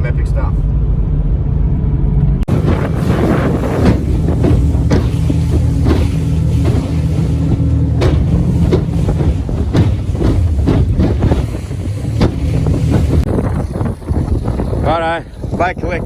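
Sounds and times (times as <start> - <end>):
wind buffeting microphone: 0.8 - 16.0
boat motor running: 2.4 - 16.0
sharp knocks: 2.5 - 13.3.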